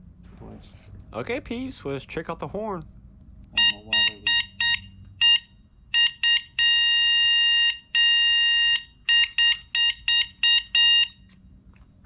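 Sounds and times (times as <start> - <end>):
electric horn beeping: 3.6 - 11.3.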